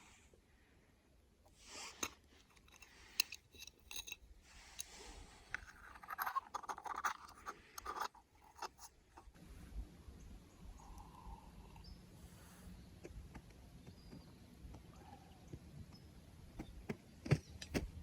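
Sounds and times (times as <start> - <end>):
gear scratching and rustling: 1.6 - 9.4.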